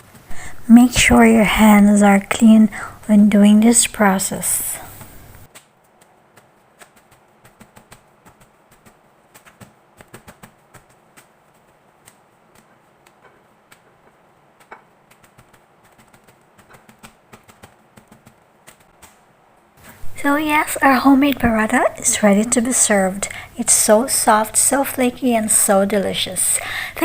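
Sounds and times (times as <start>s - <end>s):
flaky bread crackling by hand: 4.8s - 20.1s.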